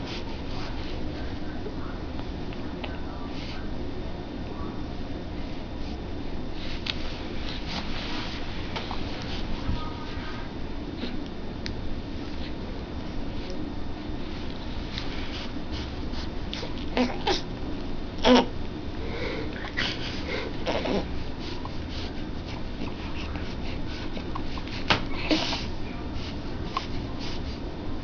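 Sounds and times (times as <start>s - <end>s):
baby grunting: 16.9s - 17.5s, 18.2s - 18.5s, 20.6s - 21.1s
baby snuffly breathing: 19.1s - 27.6s.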